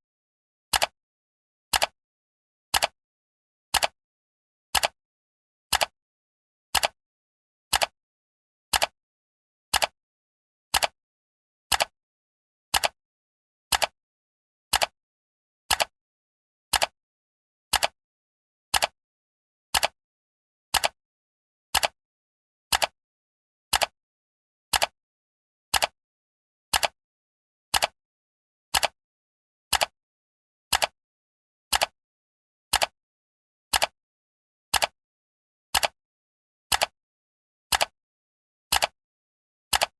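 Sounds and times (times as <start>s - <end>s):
clock ticking: 31.7s - 31.9s, 36.7s - 36.9s, 37.7s - 37.9s.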